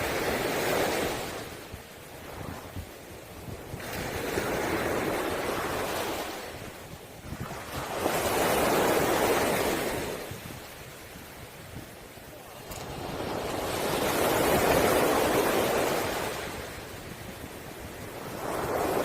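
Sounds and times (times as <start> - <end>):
waves breaking on pebble beach: 3.5 - 10.9, 12.3 - 17.1, 17.8 - 19.0.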